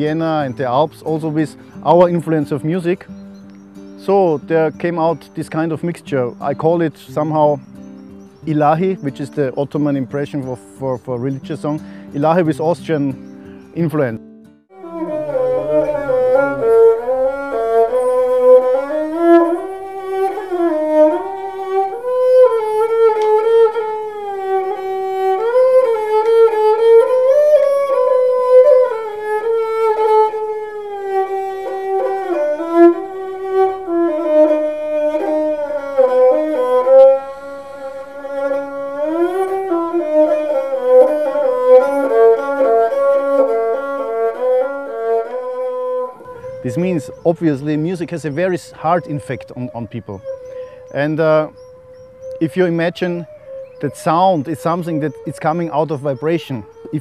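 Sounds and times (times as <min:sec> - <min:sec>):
violin melody with slides: 0:00.0 - 0:57.0.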